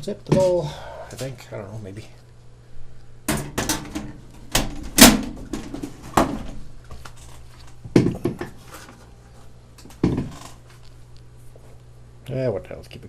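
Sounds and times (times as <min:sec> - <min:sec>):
hard objects knocking: 0:07.9 - 0:08.6.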